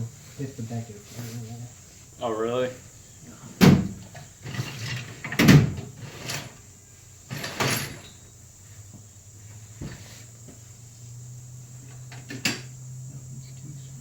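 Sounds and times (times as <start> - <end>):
tools clattering: 7.3 - 8.2.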